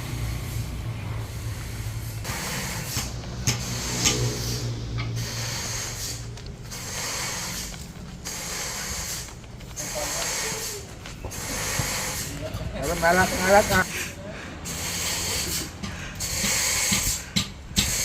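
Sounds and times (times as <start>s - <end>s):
low motor hum: 0.0s - 13.8s
hissing bursts: 0.0s - 14.0s, 14.6s - 18.0s.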